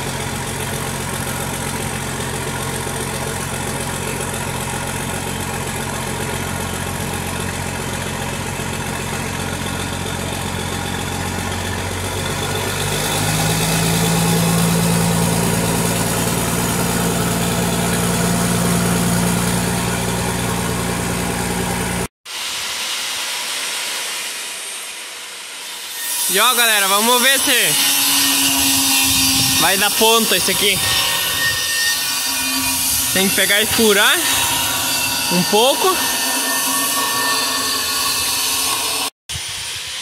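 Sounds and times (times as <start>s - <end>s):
diesel engine rumbling: 0.0s - 22.1s
hissing sound: 22.3s - 26.0s.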